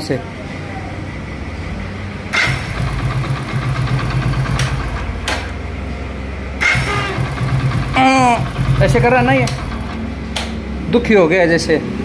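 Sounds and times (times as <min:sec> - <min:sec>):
motorcycle starter cranking engine: 0:02.3 - 0:05.6, 0:06.6 - 0:10.6.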